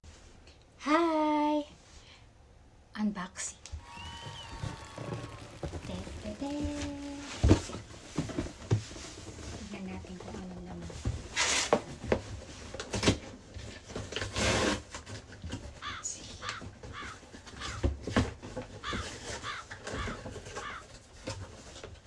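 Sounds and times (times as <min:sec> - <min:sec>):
loud noisy bursts: 0:03.8 - 0:07.5
crow cawing: 0:15.8 - 0:17.9, 0:18.8 - 0:20.9.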